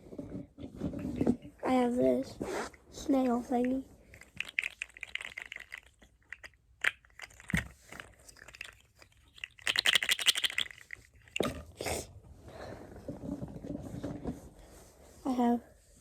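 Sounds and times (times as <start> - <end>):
plastic fidget toy clicking: 3.6 - 11.6.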